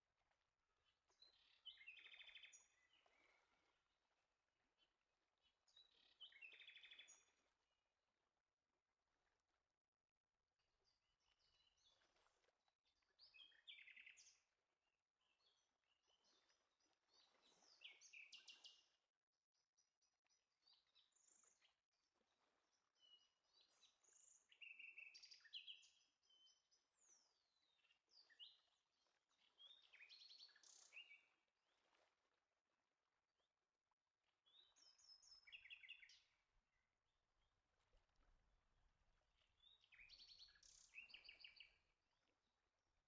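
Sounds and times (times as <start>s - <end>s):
faint birdsong chirping and trilling: 0.9s - 3.5s, 5.7s - 7.4s, 23.0s - 31.4s, 34.4s - 36.4s, 39.5s - 41.9s.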